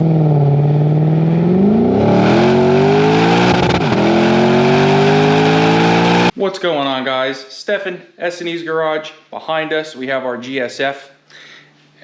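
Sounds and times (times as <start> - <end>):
car engine accelerating: 0.0 - 6.3.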